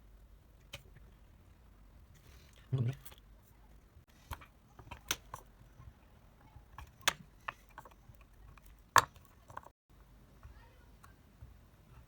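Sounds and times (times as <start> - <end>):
small tools clicking and tapping: 6.6 - 9.8.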